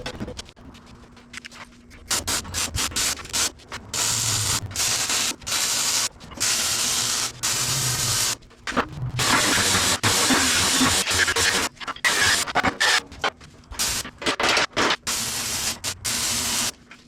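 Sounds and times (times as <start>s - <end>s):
power tool working steel plate: 9.2s - 13.0s.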